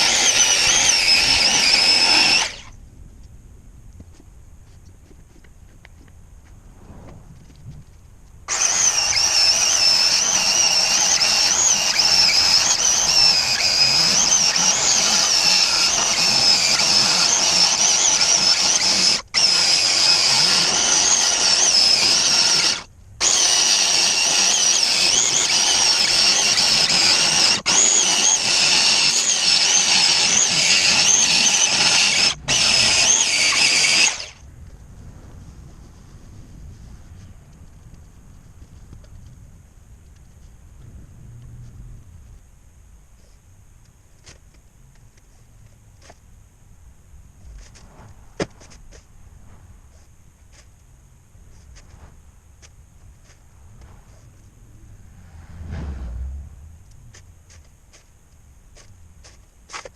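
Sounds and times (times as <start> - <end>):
power tool whining: 0.0 - 2.7, 8.5 - 34.4.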